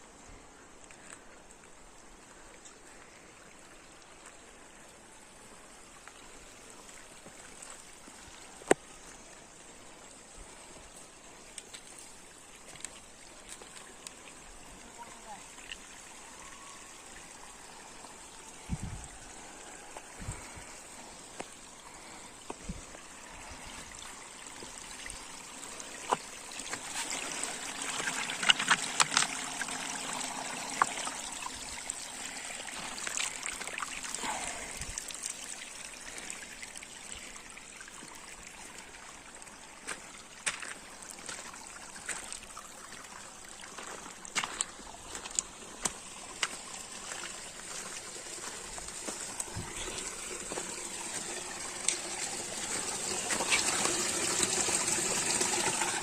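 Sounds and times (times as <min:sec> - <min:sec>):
water trickling over rocks: 0:00.0 - 0:56.0.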